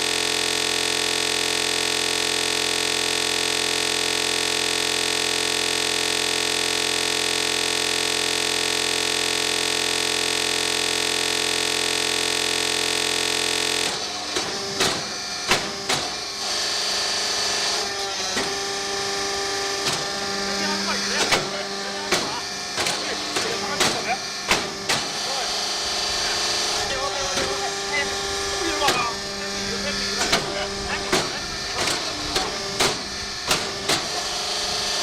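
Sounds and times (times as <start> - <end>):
electronic buzz: 0.0 - 35.0
motor hum: 0.0 - 35.0
press knocks and clanks: 13.8 - 16.2, 21.0 - 25.3, 30.1 - 34.4.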